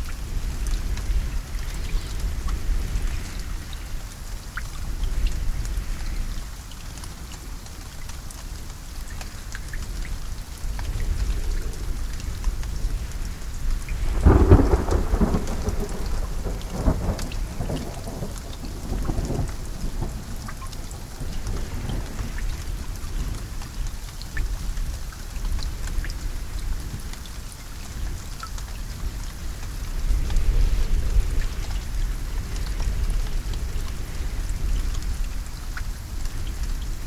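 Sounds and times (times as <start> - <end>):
steady rain: 0.0 - 37.0
rolling thunderclap: 13.8 - 23.4.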